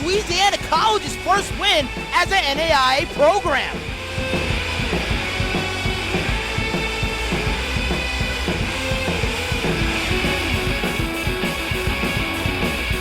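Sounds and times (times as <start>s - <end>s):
rock music with guitar and drums: 0.0s - 13.0s.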